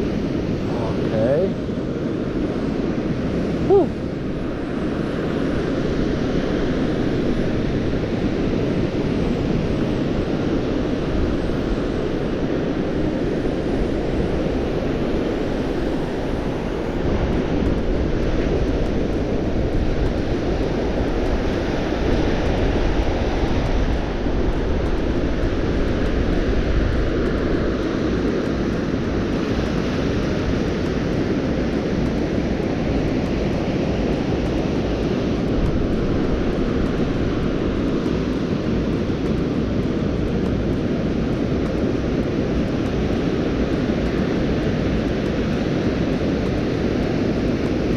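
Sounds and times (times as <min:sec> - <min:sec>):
wind buffeting microphone: 0:00.0 - 0:47.9.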